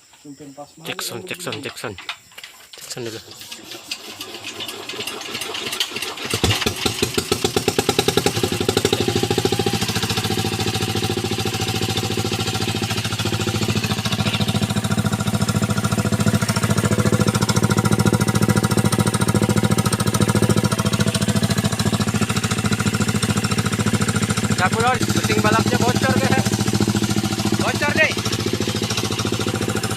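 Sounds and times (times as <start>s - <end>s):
diesel engine running: 4.5s - 29.9s
loud exhaust chatter: 24.3s - 28.9s.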